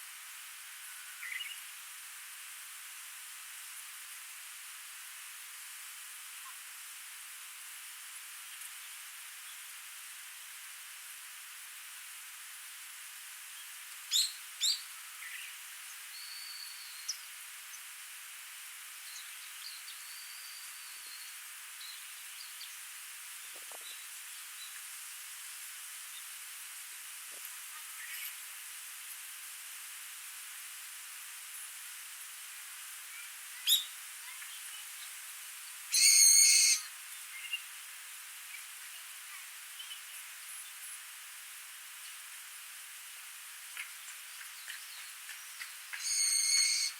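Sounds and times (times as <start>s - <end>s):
stream hissing: 34.9s - 46.9s
buzzy bird call: 35.9s - 37.5s, 45.9s - 46.9s
bird calls: 44.4s - 46.9s.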